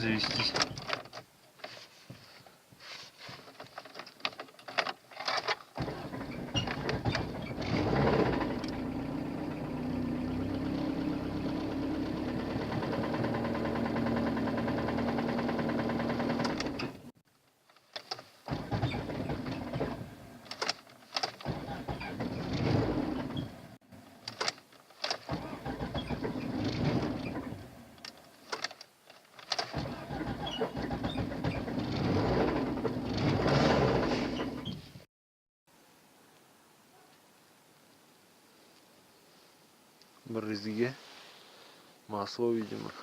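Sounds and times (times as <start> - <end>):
rapid engine ticking: 5.8 - 16.8
car engine running: 5.8 - 17.1, 25.3 - 28.0.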